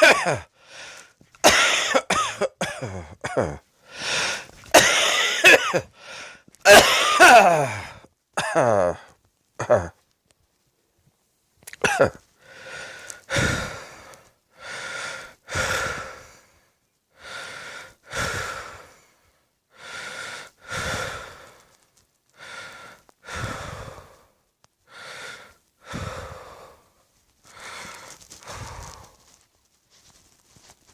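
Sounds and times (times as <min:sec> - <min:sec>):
person breathing heavily: 0:00.0 - 0:01.2, 0:03.8 - 0:04.6, 0:05.2 - 0:06.5, 0:07.4 - 0:08.1, 0:12.4 - 0:29.4
voiced gasp: 0:12.4 - 0:16.5, 0:22.4 - 0:24.2, 0:24.9 - 0:26.9.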